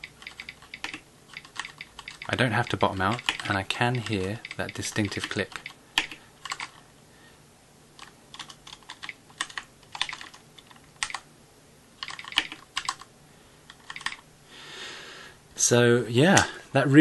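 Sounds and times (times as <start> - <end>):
mechanical keyboard typing: 0.0 - 6.8, 8.0 - 11.3, 12.0 - 13.1, 13.7 - 14.2.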